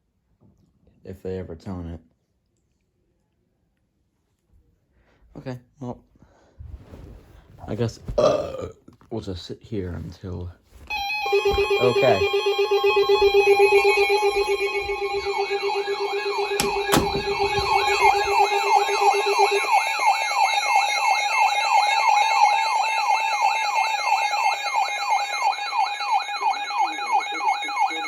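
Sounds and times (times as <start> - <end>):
steady tone: 10.9 - 20.5
low pulsing beep: 10.9 - 21.5
electronic siren wail: 10.9 - 28.0
sharp clicks: 16.6 - 18.2.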